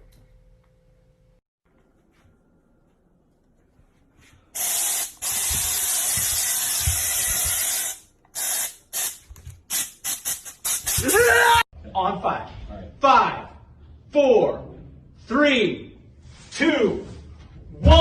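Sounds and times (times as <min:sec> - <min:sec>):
hissing spray from nozzle: 0:04.6 - 0:11.1.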